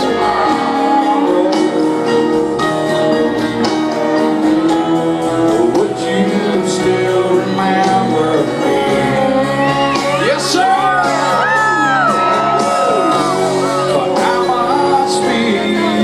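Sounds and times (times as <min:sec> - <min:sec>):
live rock band with singing: 0:00.0 - 0:16.0
crowd shouting and whooping: 0:09.3 - 0:15.2.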